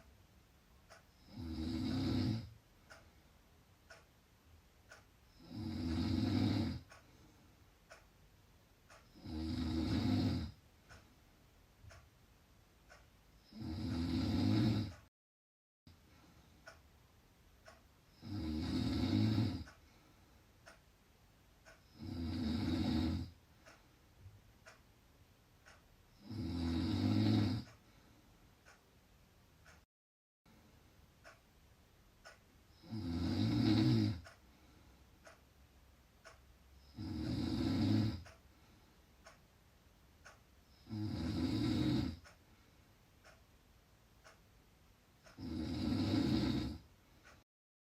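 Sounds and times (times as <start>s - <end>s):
person snoring loudly: 1.2s - 2.5s, 5.4s - 6.9s, 9.1s - 10.6s, 13.4s - 15.0s, 18.1s - 19.7s, 21.9s - 23.3s, 26.2s - 27.7s, 32.8s - 34.2s, 36.8s - 38.2s, 40.8s - 42.2s, 45.4s - 46.9s.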